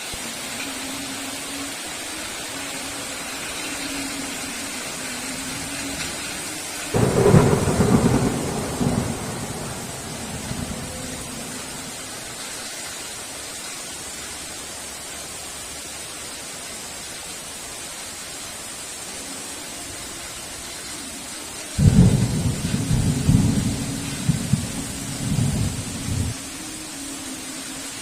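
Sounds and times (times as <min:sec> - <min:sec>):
heavy rain falling: 0:00.0 - 0:28.0
thunder rumbling: 0:04.8 - 0:12.5, 0:21.8 - 0:26.4.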